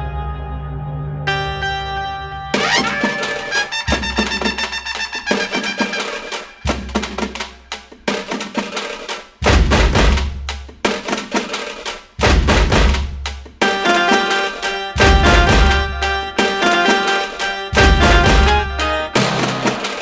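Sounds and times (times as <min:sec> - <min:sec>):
background music with drums: 0:02.6 - 0:20.0
heavy bass hits: 0:09.4 - 0:10.5, 0:12.2 - 0:13.3, 0:15.0 - 0:16.2.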